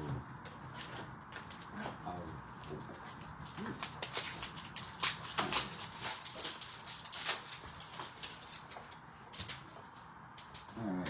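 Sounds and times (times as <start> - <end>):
plastic wrappers crinkling: 3.4 - 9.7.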